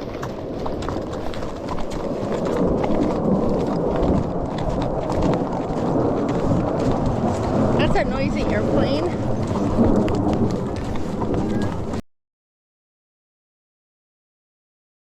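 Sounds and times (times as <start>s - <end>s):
airplane rumble overhead: 0.0s - 12.0s
hooves clopping on dirt: 0.0s - 12.0s.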